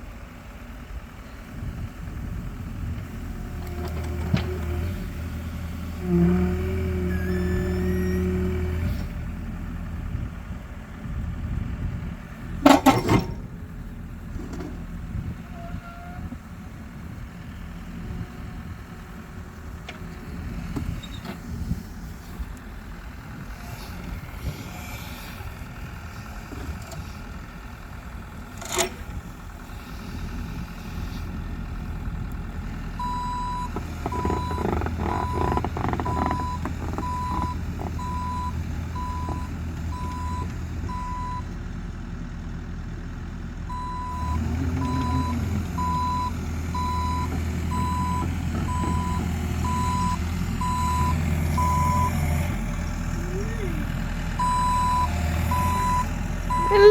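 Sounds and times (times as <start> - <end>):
excavator engine running: 0.0 - 56.9
clatter: 33.6 - 38.2
travel alarm beeping: 43.7 - 52.1, 54.4 - 56.9.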